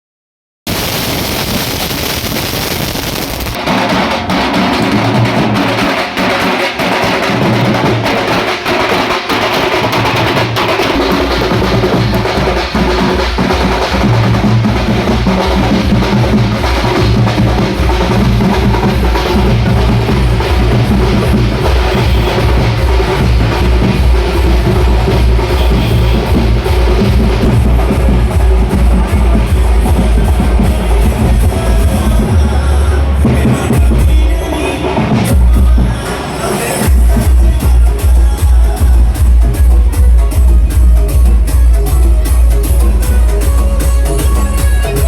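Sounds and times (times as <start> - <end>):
dance music drum beat: 3.5 - 32.6, 33.2 - 36.0, 36.8 - 45.0
deep pulsing bass beat: 14.0 - 34.5, 36.8 - 45.0.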